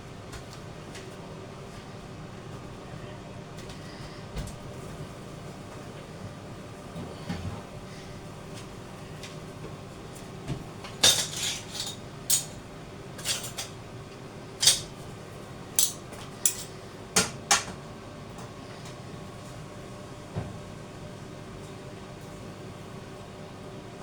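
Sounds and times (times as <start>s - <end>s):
cutlery and dishes clinking: 11.0s - 12.6s, 13.2s - 13.8s, 14.6s - 14.9s, 15.8s - 16.7s.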